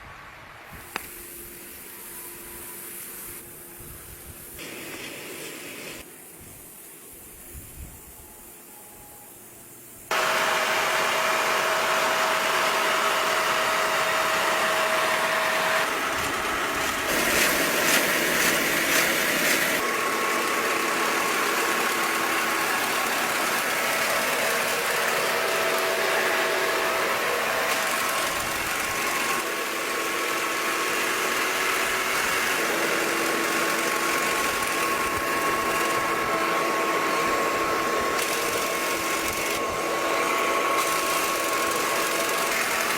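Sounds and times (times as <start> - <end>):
farm machinery engine running: 10.1 - 42.9.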